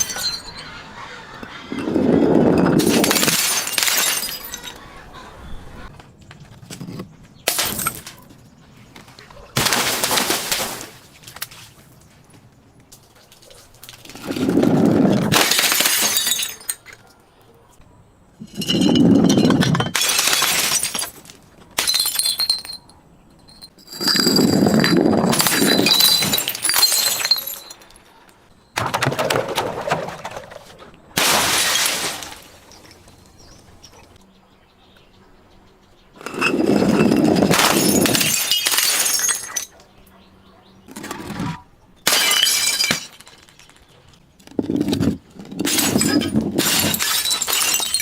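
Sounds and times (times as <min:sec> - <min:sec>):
glass bottles shattering: 0:00.0 - 0:00.6, 0:02.5 - 0:04.8, 0:07.5 - 0:08.2, 0:09.6 - 0:11.0, 0:15.2 - 0:16.9, 0:18.4 - 0:28.0, 0:31.2 - 0:33.4, 0:36.2 - 0:39.7, 0:42.0 - 0:43.9, 0:44.6 - 0:48.0
glass shards tinkling: 0:00.0 - 0:00.6, 0:18.4 - 0:28.0, 0:36.3 - 0:39.7, 0:42.1 - 0:43.8, 0:45.6 - 0:48.0.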